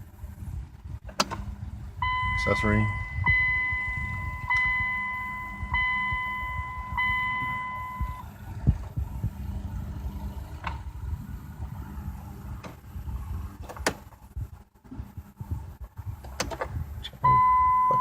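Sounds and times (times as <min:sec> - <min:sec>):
car dashboard warning chime: 0:02.0 - 0:08.2, 0:17.2 - 0:18.0.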